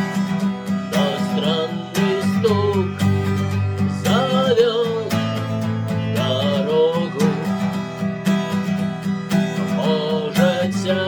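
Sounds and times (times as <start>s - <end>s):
acoustic guitar strumming: 0.0s - 11.0s
person singing: 0.9s - 7.9s, 9.6s - 11.0s.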